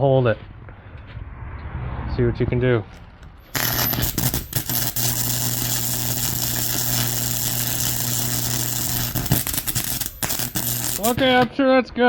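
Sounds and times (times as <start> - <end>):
welder low hum: 3.5 - 11.5
welding arc crackling: 3.5 - 11.6.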